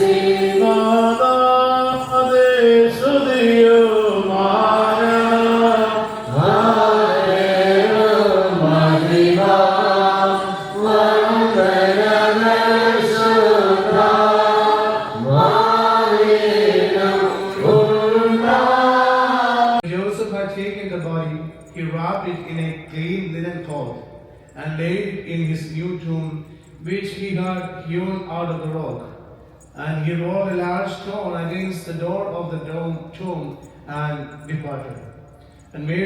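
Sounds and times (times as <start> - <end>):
voices chanting: 0.0 - 2.3, 3.1 - 19.9.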